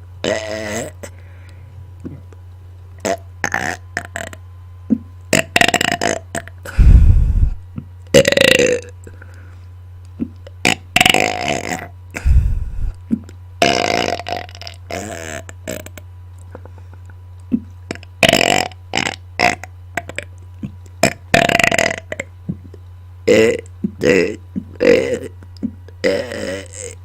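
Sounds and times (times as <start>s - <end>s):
person belching loudly: 0.2s - 1.1s, 3.0s - 6.9s, 8.1s - 9.0s, 10.2s - 12.9s, 13.6s - 16.0s, 17.9s - 20.3s, 21.0s - 27.0s
low hum: 6.4s - 8.3s, 12.0s - 13.6s.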